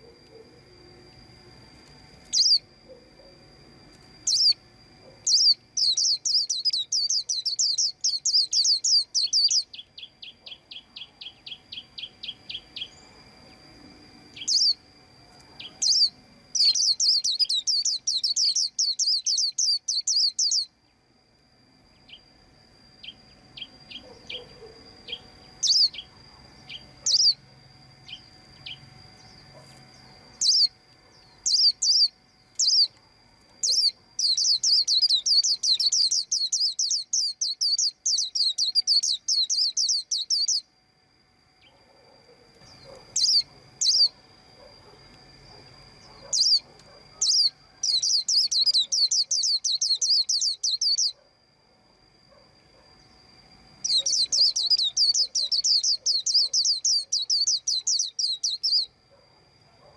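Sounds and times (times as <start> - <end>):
birds chirping rapid trills: 0.0 - 21.2, 21.8 - 51.2, 52.3 - 59.1
sharp bird calls: 2.3 - 2.6, 5.2 - 13.0, 14.4 - 14.8, 15.6 - 20.7, 23.0 - 26.1, 26.7 - 27.4, 28.1 - 32.9, 33.6 - 40.7, 42.7 - 44.2, 46.0 - 51.2, 53.8 - 58.9.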